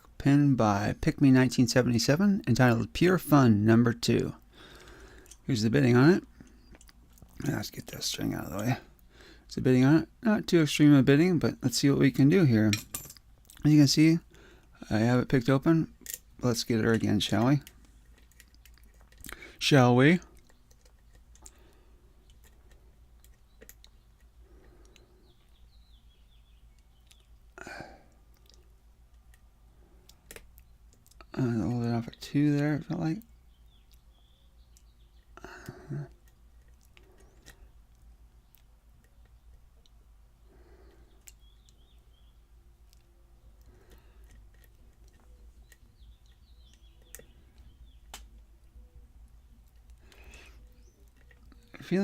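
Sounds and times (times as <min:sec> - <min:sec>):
lock picks clicking and scraping: 0:15.9 - 0:16.4, 0:17.3 - 0:19.3, 0:20.3 - 0:25.0, 0:28.4 - 0:31.3, 0:36.1 - 0:39.9, 0:42.9 - 0:48.5, 0:49.3 - 0:51.7.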